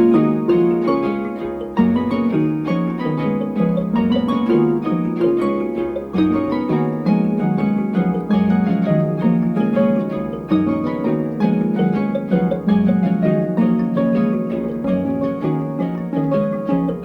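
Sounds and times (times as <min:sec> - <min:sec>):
harp music: 0:00.0 - 0:17.0.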